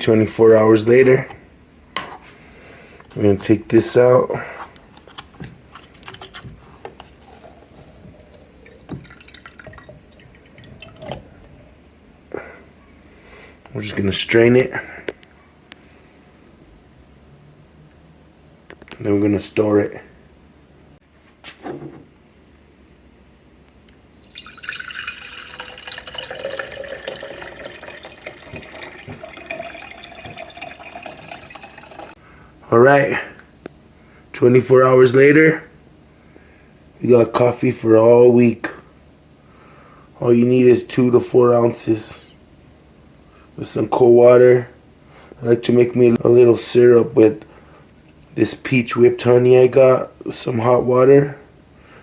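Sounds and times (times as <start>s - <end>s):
coffee dripping and trickling: 6.0s - 11.7s, 24.2s - 32.2s.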